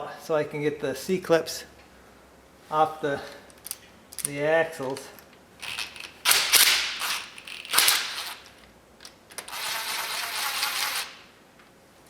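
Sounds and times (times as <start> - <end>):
ratchet turning a bolt: 5.6 - 8.5, 9.4 - 11.2.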